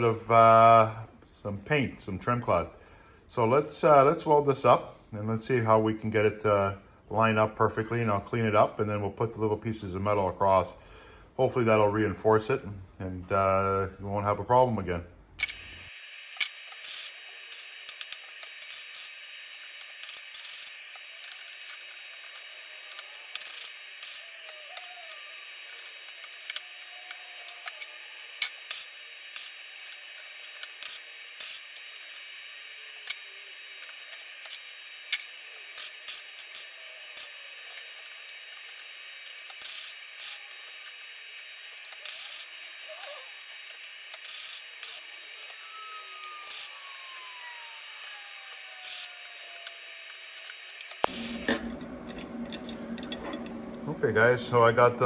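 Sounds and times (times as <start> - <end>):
welding arc hissing and crackling: 15.4 - 51.8.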